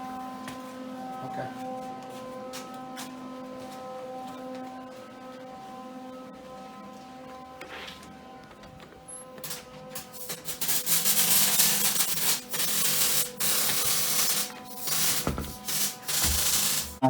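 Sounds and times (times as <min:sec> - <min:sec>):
welder arc hissing: 0:10.0 - 0:17.0.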